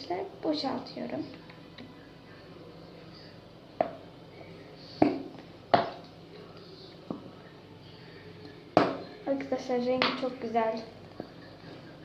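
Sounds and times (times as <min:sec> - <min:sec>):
plastic bottle knocks: 0:08.8 - 0:09.0.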